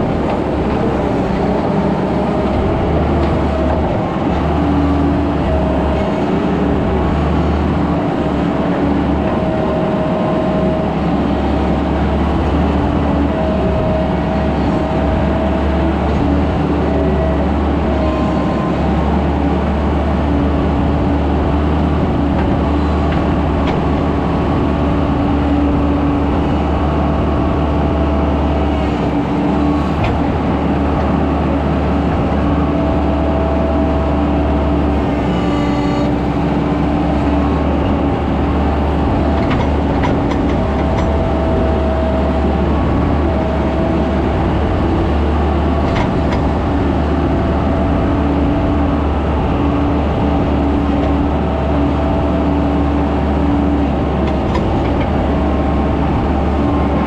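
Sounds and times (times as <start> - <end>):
skid steer engine running: 0.0 - 57.0.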